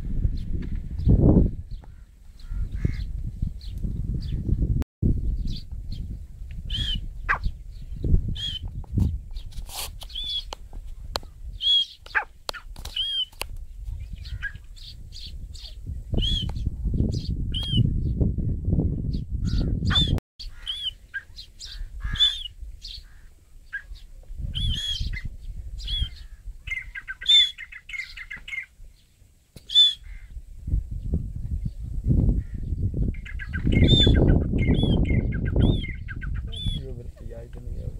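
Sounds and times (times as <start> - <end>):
francolin calling: 11.6 - 12.3, 19.5 - 28.7, 29.7 - 30.3, 33.2 - 36.9.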